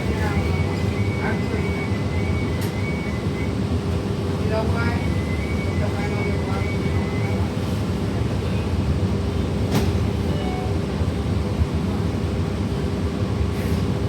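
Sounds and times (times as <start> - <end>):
bus engine and road rumble: 0.0 - 14.0
constant hum: 0.0 - 14.0.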